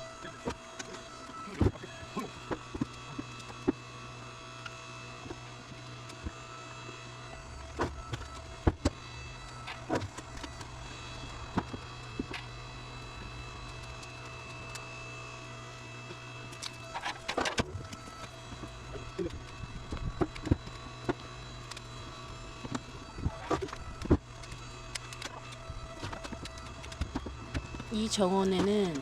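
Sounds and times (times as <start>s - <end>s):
steady machine hum: 0.0s - 29.0s.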